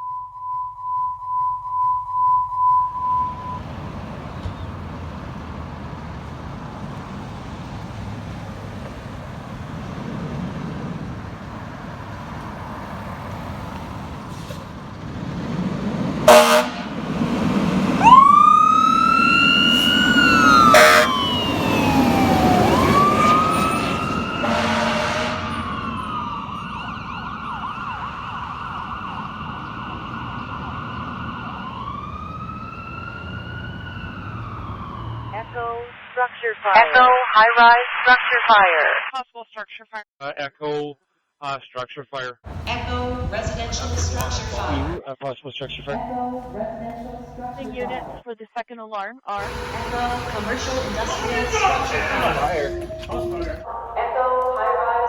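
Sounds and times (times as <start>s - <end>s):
engine and road rumble: 3.1s - 35.7s, 42.4s - 45.0s, 45.6s - 48.2s, 49.4s - 55.0s
air horn blasts: 16.3s - 17.0s, 20.6s - 21.2s, 23.0s - 25.9s, 49.4s - 53.3s
electronic siren wailing: 17.9s - 35.6s, 49.4s - 54.2s.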